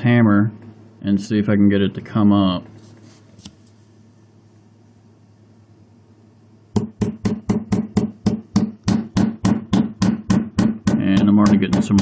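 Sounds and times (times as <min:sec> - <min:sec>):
hammer tapping a screwdriver: 0:06.8 - 0:12.0.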